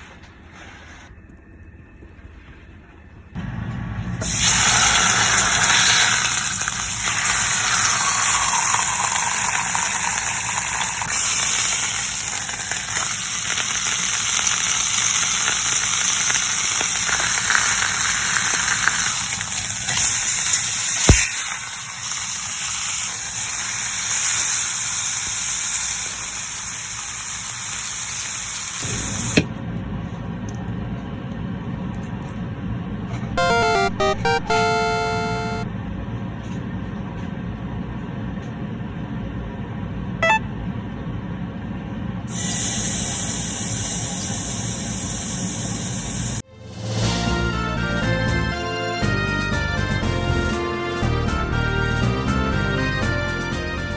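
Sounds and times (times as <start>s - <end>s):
steak sizzling in a pot: 4.2s - 29.4s.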